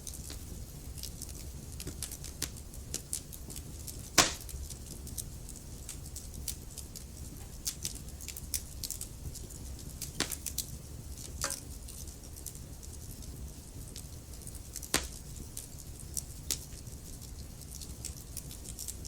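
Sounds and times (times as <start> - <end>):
fire crackling and popping: 0.0 - 19.0
low rumble of flames: 0.0 - 19.0.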